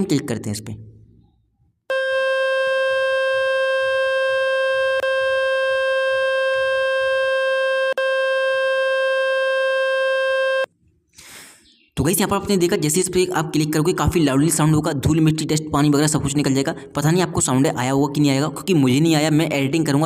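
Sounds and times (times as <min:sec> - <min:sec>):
loud steady tone from phone speaker: 0:01.9 - 0:10.7.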